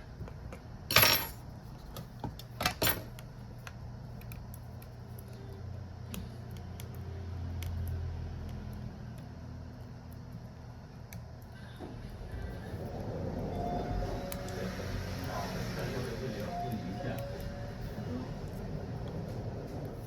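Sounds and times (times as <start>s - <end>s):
metal tools clinking on workbench: 0.9s - 1.4s
low hum: 2.8s - 20.0s.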